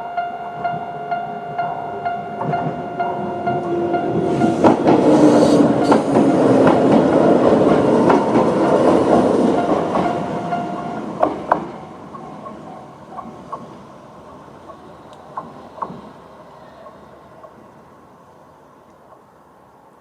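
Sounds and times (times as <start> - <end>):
train rumble: 0.0 - 20.0
train wheels clacking over rail joints: 3.5 - 16.2.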